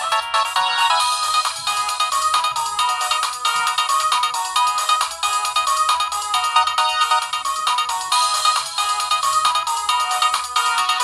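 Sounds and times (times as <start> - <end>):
phone ringtone electronic melody: 0.0 - 11.0.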